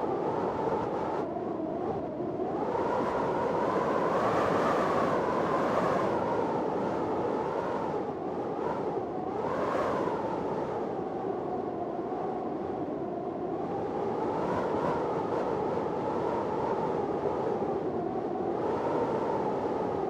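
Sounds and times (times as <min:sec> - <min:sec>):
storm wind blowing hard: 0:00.0 - 0:20.0.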